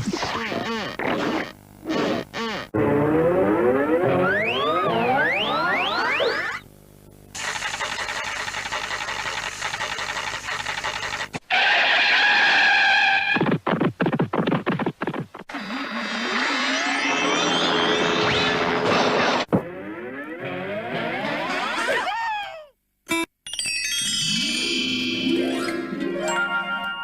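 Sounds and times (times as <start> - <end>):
cartoon pitch-bending sound effects: 2.4 - 6.6, 15.6 - 22.7
jingle music: 23.1 - 27.0.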